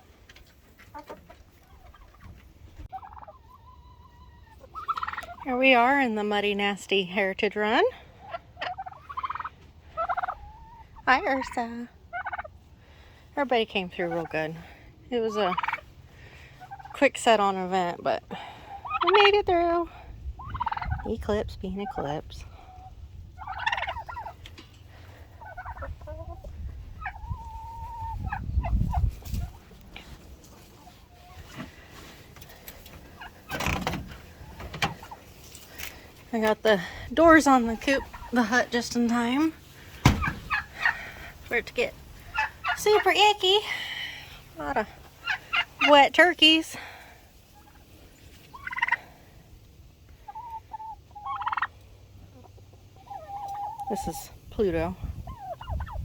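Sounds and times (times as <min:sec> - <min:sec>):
chickens clucking: 0:00.0 - 0:56.0
turkey long steady call: 0:00.9 - 0:05.4, 0:08.0 - 0:10.9, 0:12.0 - 0:13.2, 0:15.5 - 0:16.9, 0:18.3 - 0:19.3, 0:20.4 - 0:21.0, 0:22.5 - 0:28.7, 0:39.6 - 0:46.1, 0:46.8 - 0:49.5, 0:50.1 - 0:54.1, 0:55.2 - 0:56.0.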